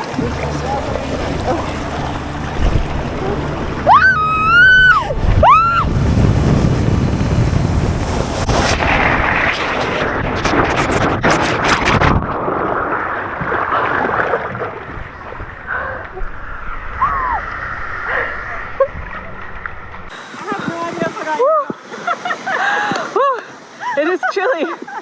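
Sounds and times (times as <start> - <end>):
wind on microphone: 0.0 - 21.2
water splashing: 0.0 - 23.3
rushing water: 0.0 - 24.5
high-pitched rising and falling calls: 2.2 - 6.3.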